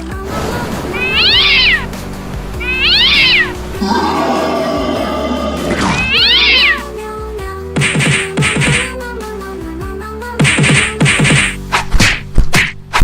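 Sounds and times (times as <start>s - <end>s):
background music: 0.0s - 13.0s
cat meowing: 0.9s - 7.0s.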